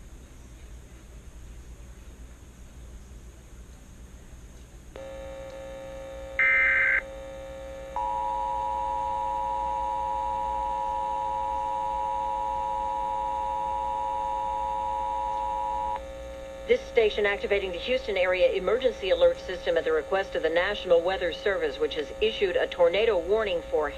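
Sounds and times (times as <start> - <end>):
electrical hum: 0.0 - 23.9
shrill digital data tones: 6.4 - 7.0
two-tone attention signal: 6.4 - 7.0, 8.0 - 16.0.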